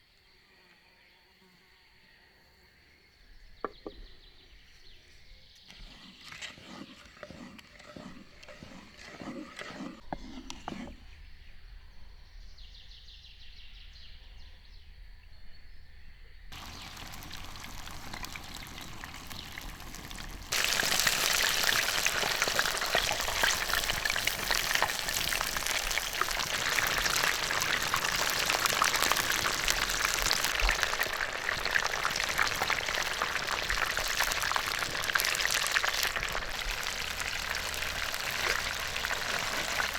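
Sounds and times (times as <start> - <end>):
food sizzling over a fire: 16.5 - 39.9.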